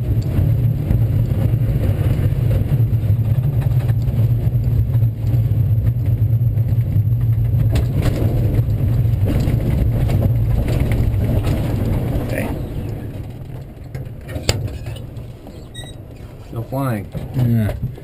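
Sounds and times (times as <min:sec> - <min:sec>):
low rumble of airflow: 0:00.0 - 0:18.0.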